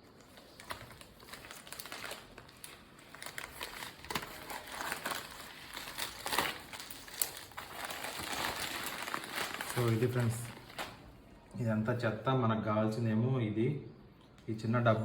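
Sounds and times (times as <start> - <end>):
plastic wrap crinkling: 0.0 - 11.2.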